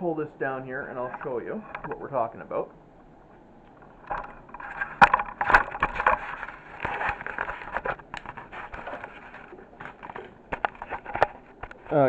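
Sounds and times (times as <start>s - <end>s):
object being handled and moved: 3.2s - 12.0s.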